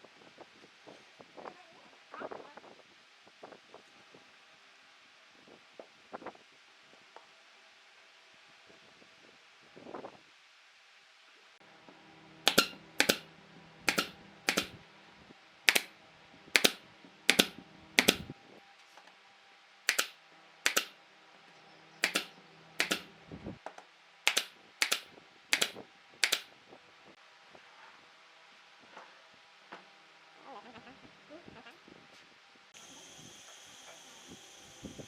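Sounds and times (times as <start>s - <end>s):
sharp woodworking tool strikes: 12.5s - 13.3s, 13.9s - 14.8s, 15.7s - 15.9s, 16.6s - 18.3s, 19.9s - 21.0s, 22.0s - 23.1s, 24.3s - 26.5s.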